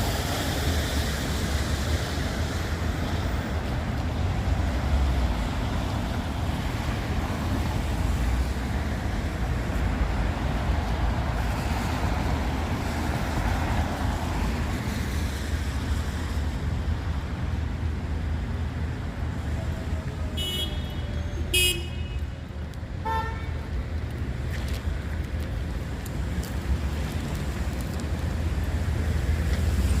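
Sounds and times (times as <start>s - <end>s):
traffic rumble: 0.0s - 30.0s
tyres hissing on wet road: 0.0s - 30.0s
car horn toot: 20.4s - 22.2s, 23.0s - 23.5s.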